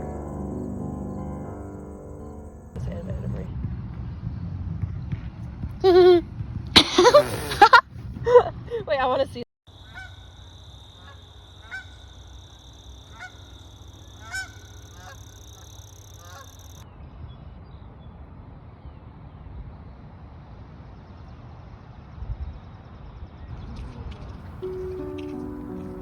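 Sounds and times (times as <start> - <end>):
low outdoor rumble: 0.0 - 6.7.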